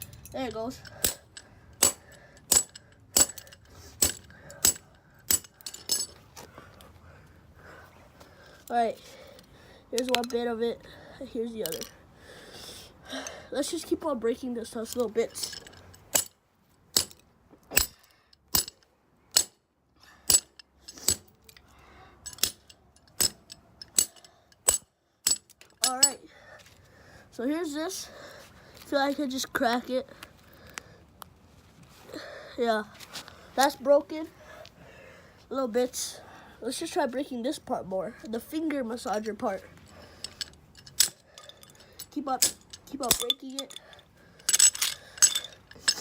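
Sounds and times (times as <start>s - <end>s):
hard plastic clinks: 39.9s - 46.0s.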